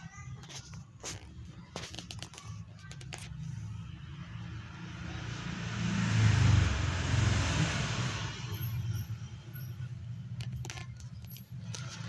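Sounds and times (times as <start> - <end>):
road vehicle passing by: 3.2 - 12.0.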